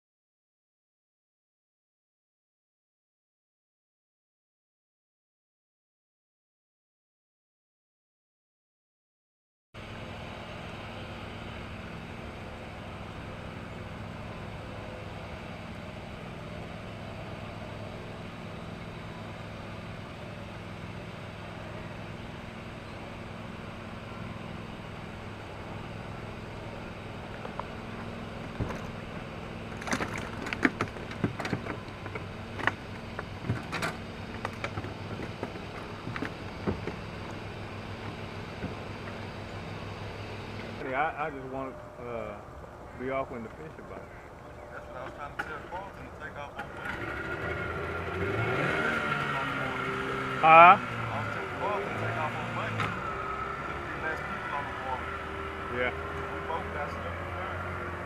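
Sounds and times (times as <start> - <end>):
boat motor humming: 9.8 - 58.0
sharp knocks and clicks: 29.8 - 37.4.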